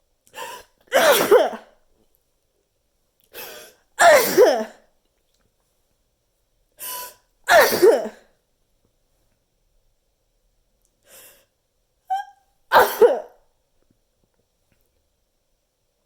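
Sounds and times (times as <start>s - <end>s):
person sneezing: 0.4s - 1.7s, 3.4s - 4.8s, 6.8s - 8.2s, 12.7s - 13.4s.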